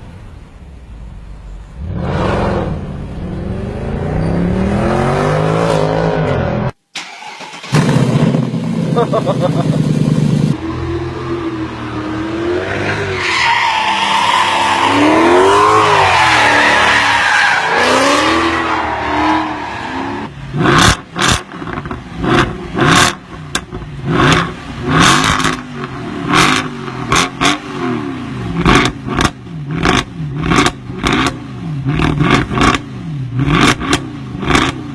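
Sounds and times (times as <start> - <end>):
car engine revving hard: 17.6 - 34.9.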